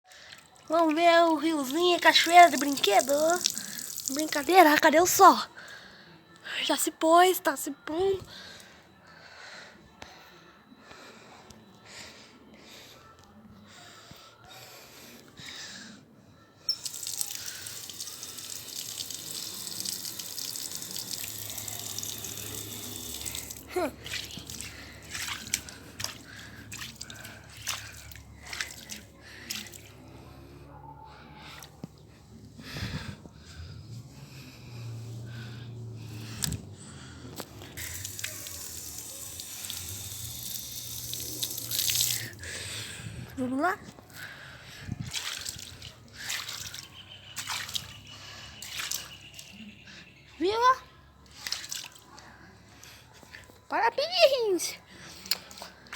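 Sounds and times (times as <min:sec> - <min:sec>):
toy waterfall splashing: 0:00.7 - 0:04.9, 0:16.7 - 0:29.8, 0:37.8 - 0:42.4.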